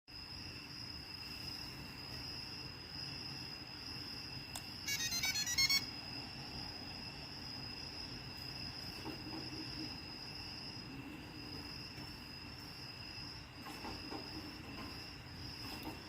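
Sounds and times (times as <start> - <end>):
high-pitched electronic whine: 4.9 - 5.9.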